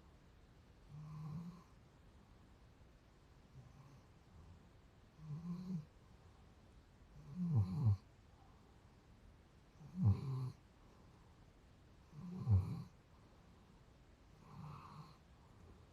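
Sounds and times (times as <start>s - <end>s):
dog snoring: 0.9s - 1.8s, 3.5s - 4.0s, 5.2s - 5.9s, 7.2s - 8.1s, 9.7s - 10.6s, 12.0s - 13.0s, 14.3s - 15.2s.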